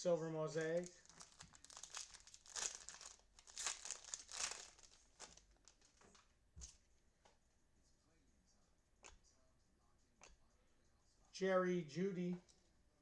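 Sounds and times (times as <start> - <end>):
card wrappers crinkling and rustling: 0.6 - 6.8.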